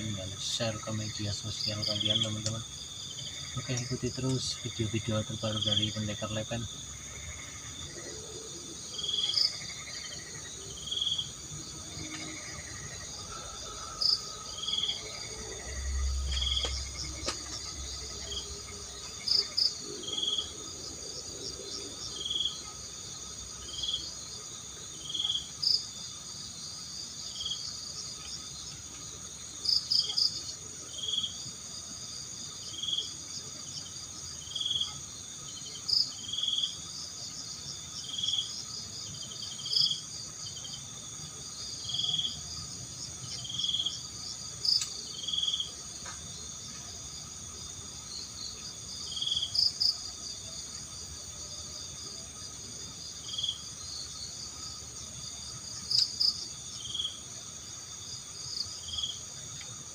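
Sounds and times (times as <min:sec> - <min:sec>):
cricket chirps: 0:00.0 - 0:59.9
insects trilling chorus: 0:00.0 - 0:59.9.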